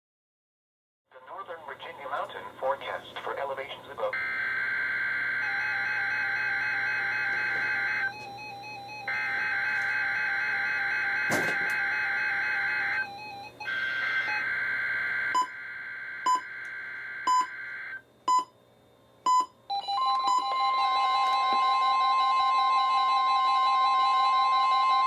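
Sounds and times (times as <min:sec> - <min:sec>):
layered electronic tones: 0:04.1 - 0:18.0
loud high alarm tone: 0:04.1 - 0:18.0, 0:19.7 - 0:25.0.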